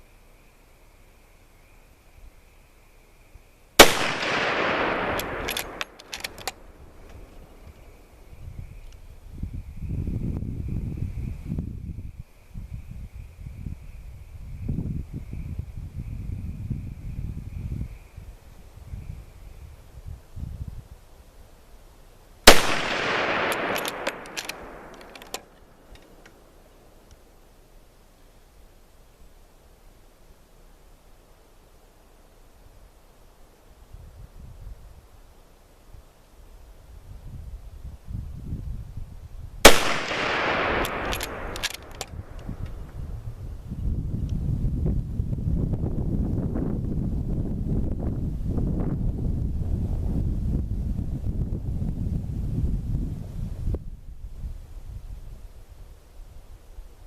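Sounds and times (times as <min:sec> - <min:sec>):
rifle shot with echo: 0:03.8 - 0:07.1, 0:22.4 - 0:25.9, 0:39.6 - 0:42.4
sharp rifle bolt clicks: 0:03.8 - 0:07.8, 0:22.5 - 0:26.4, 0:39.6 - 0:42.8.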